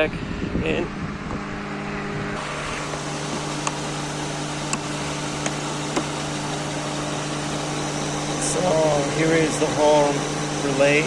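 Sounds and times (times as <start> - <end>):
car engine idling: 2.4 - 11.0.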